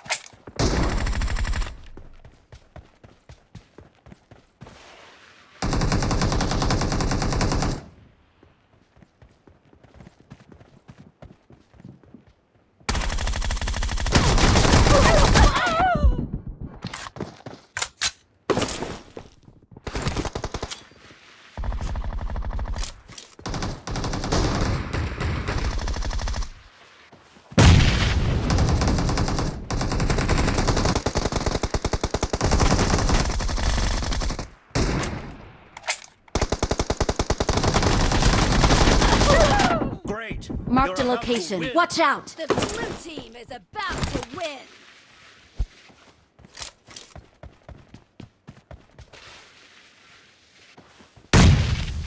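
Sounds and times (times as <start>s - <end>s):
video game automatic gunfire: 23.4s - 26.5s, 28.5s - 34.9s, 36.4s - 39.5s.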